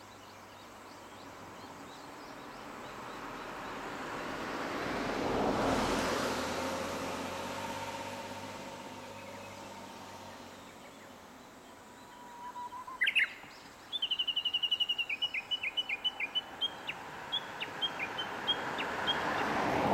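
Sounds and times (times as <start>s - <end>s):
bird song: 0.0s - 4.4s, 8.9s - 19.6s
outdoor background noise: 0.0s - 19.9s.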